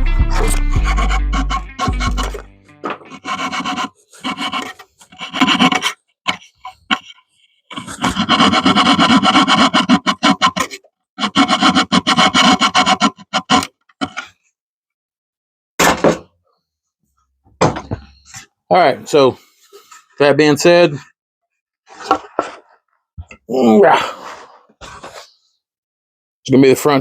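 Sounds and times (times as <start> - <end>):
hand saw cutting wood: 0.3 - 2.4, 3.0 - 14.3.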